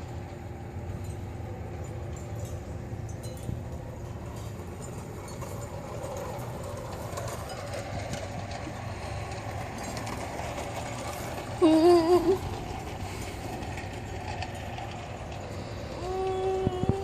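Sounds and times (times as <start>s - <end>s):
wheels clicking on rails: 0.0s - 17.0s
model train motor hum: 3.7s - 17.0s.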